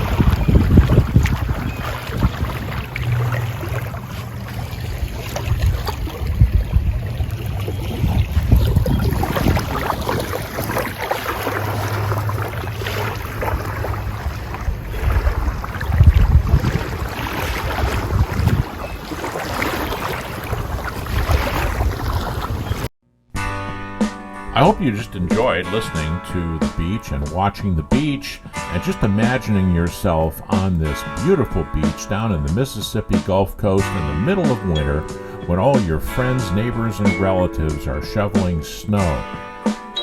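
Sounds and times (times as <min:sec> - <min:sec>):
small waves on sandy beach: 0:00.0 - 0:22.9
wind gusting on microphone: 0:00.0 - 0:22.9.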